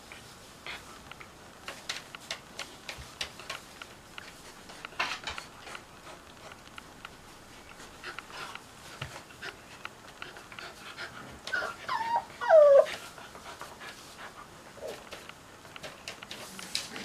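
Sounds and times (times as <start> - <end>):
puppy whimpering: 11.5 - 13.0.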